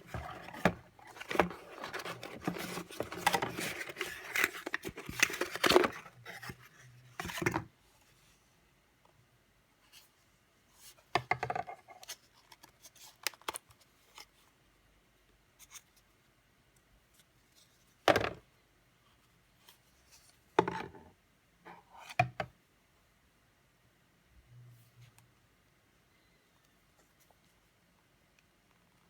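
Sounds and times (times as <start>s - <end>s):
packaging rustling and clicking: 0.0s - 6.6s.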